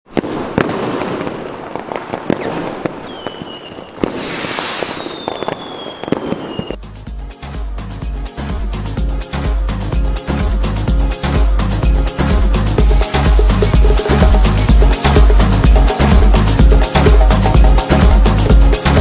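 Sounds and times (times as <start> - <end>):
fireworks bangs and crackling: 0.1 - 6.8
firework whistle: 2.3 - 6.8
electronic dance music: 6.8 - 19.0.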